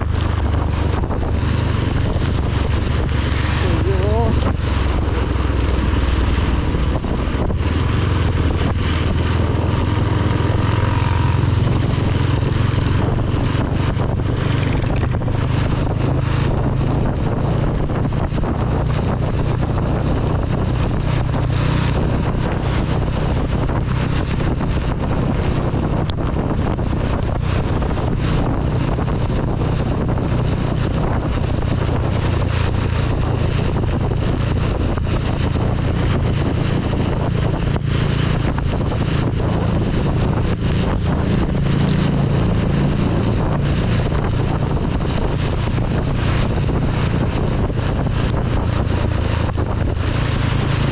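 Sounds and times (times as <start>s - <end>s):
motorcycle engine drone: 0.0s - 50.9s
wind buffeting microphone: 0.0s - 50.9s
heavy rain and spray hissing: 3.2s - 7.3s.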